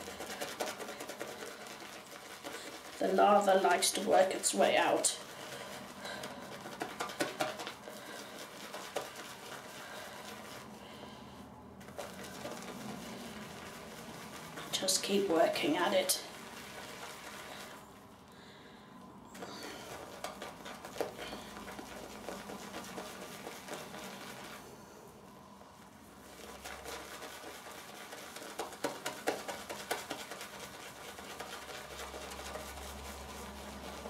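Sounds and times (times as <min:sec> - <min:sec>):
brush whisking soap lather: 0:00.0 - 0:34.0.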